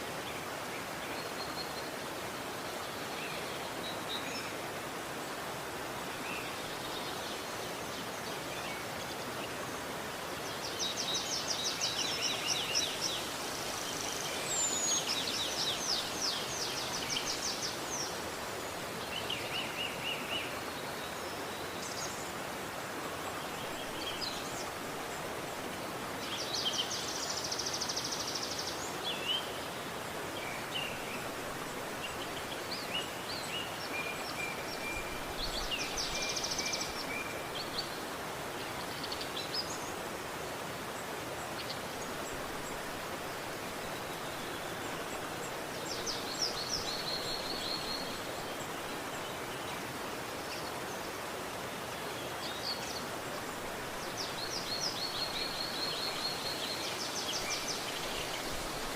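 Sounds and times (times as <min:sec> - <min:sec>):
river flowing: 0:00.0 - 0:58.9.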